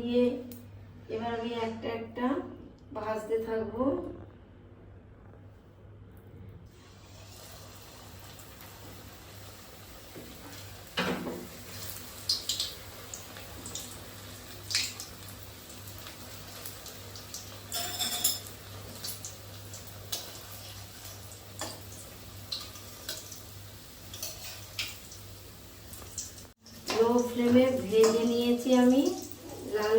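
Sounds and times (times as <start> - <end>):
food sizzling in oil: 6.8 - 29.9.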